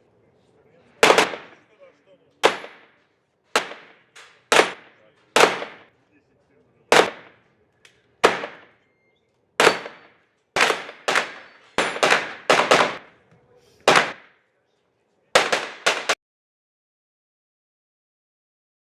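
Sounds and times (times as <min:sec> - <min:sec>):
gunshots echoing: 0:01.0 - 0:01.7, 0:02.4 - 0:06.0, 0:06.9 - 0:07.6, 0:08.2 - 0:08.8, 0:09.6 - 0:13.2, 0:13.8 - 0:14.5, 0:15.3 - 0:16.2.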